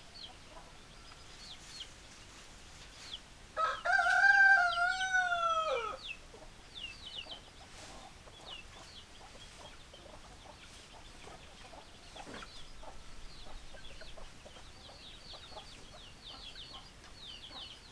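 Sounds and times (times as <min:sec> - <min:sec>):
rooster crowing: 0:03.6 - 0:06.0
chickens clucking: 0:05.9 - 0:17.9
chicks peeping: 0:06.0 - 0:17.9.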